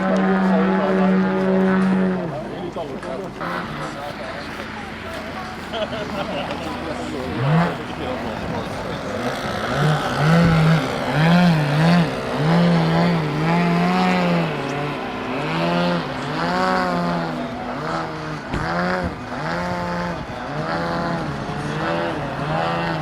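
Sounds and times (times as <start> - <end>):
steady second engine tone: 0.0 - 23.0
model airplane engine revving: 3.2 - 23.0.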